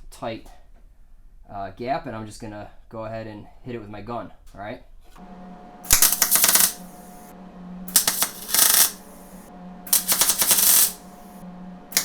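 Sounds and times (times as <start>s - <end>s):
steady hum: 5.2s - 12.0s
welding arc crackling: 5.9s - 7.3s, 7.9s - 12.0s.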